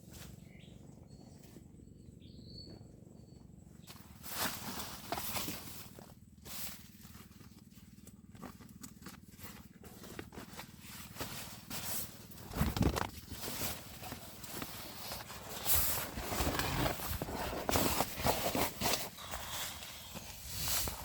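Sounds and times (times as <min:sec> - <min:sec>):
camping gear knocks and rustles: 0:08.3 - 0:19.2.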